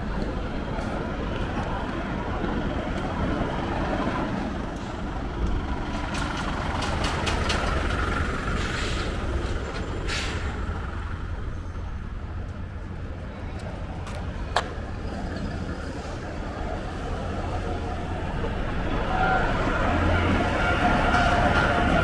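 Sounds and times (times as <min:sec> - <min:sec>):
diesel truck engine rumbling: 0:00.0 - 0:22.0.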